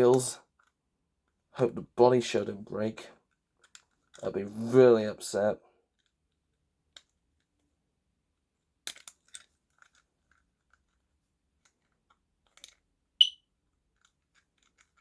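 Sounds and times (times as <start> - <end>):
smoke alarm chirp: 13.2 - 13.4.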